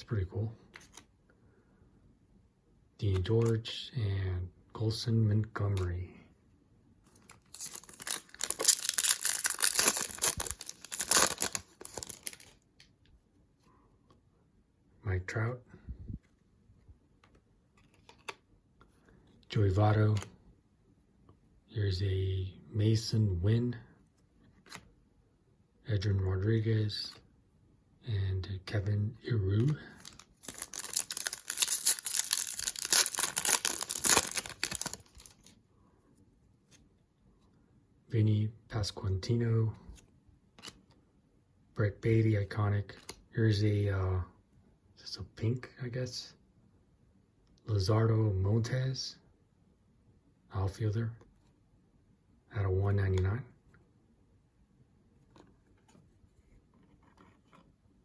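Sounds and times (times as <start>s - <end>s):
foil wrapper tearing and crinkling: 7.5s - 12.5s, 30.0s - 35.4s.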